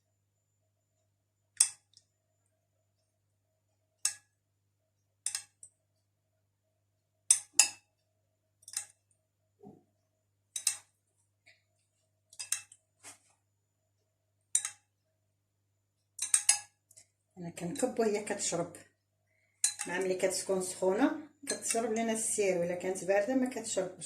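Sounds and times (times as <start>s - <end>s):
spoon clinking against dish: 16.2s - 16.7s, 19.6s - 19.9s.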